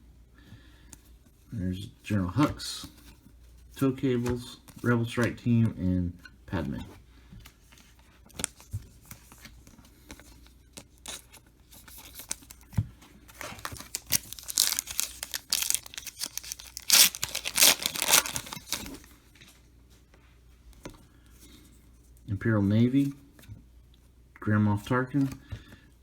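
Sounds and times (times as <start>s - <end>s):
wrapper tearing and crinkling: 13.4s - 19.1s.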